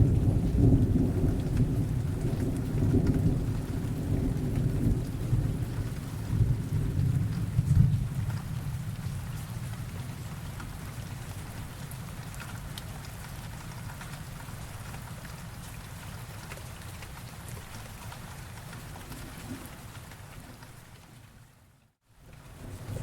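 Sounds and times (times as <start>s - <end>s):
low thunder rumble: 0.0s - 9.5s, 22.5s - 23.0s
steady rain falling: 0.0s - 23.0s.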